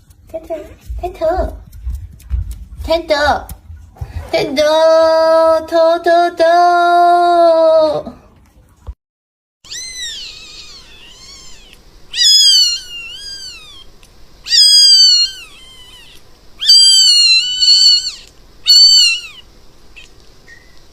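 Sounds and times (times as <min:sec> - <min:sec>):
kitten meowing: 0:09.7 - 0:13.9, 0:14.5 - 0:20.1.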